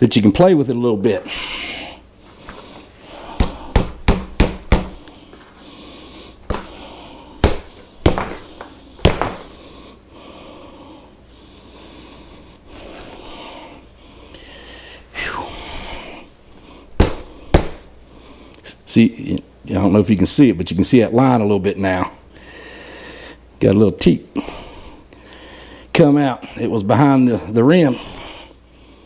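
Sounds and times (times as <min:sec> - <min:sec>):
tire knocking against wheel rim: 0:03.4 - 0:05.0.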